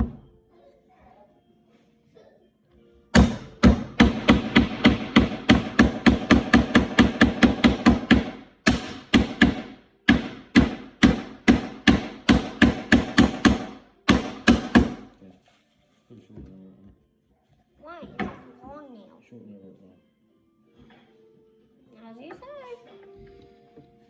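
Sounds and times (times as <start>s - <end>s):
hammer driving nails into wood: 3.2s - 15.1s.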